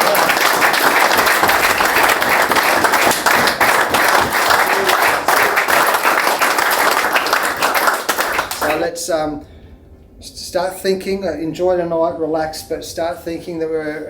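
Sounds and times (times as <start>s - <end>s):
people clapping and cheering: 0.0s - 8.9s.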